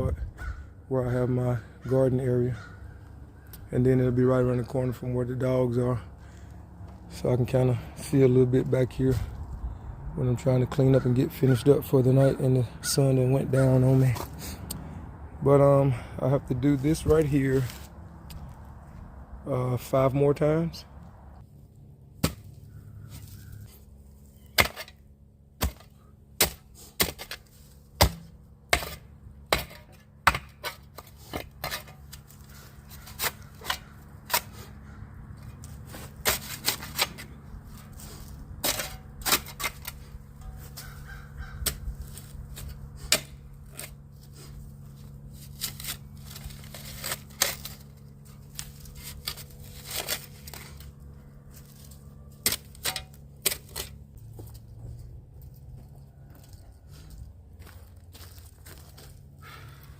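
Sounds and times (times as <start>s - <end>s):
hand tool striking: 25.6s - 32.3s, 38.6s - 41.0s, 52.4s - 54.0s.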